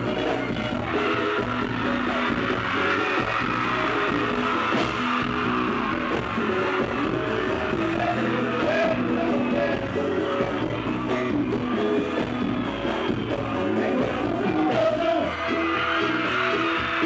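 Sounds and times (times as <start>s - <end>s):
band music with loud beat: 0.0s - 17.0s
person singing: 6.3s - 17.0s.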